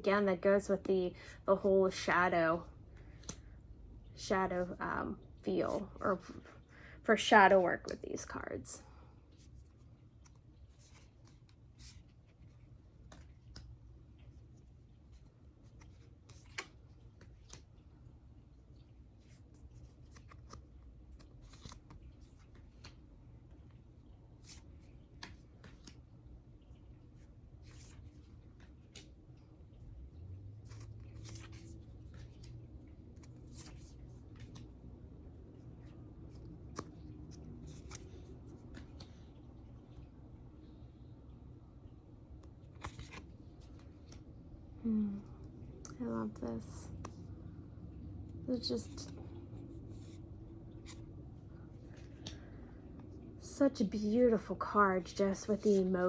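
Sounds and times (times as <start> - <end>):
low room hum: 0.0 - 56.0
cards rustling and sliding: 9.4 - 17.9, 19.2 - 23.0, 30.5 - 34.8, 35.6 - 39.4, 42.4 - 44.3, 48.6 - 51.2, 55.5 - 55.9.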